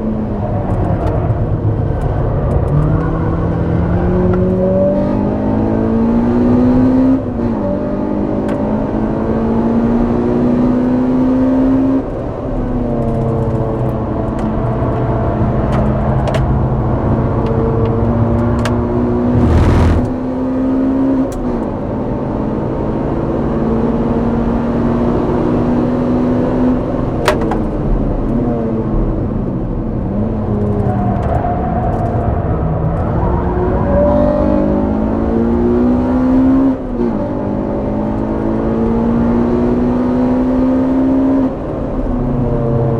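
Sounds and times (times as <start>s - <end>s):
car engine revving hard: 19.3s - 20.2s.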